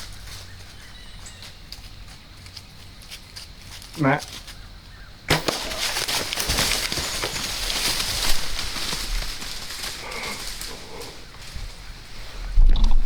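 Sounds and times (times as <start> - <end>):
arrow hitting with sharp smack: 5.3 - 6.1
deer crashing through dry leaves: 5.3 - 11.8
hooves thudding: 5.3 - 12.3.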